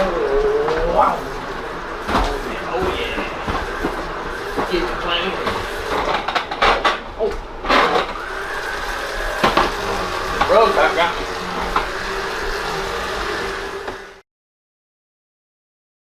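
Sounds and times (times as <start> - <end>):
small electric motor humming: 0.0 - 6.6, 7.5 - 14.2
indistinct voice sounds: 9.8 - 11.7.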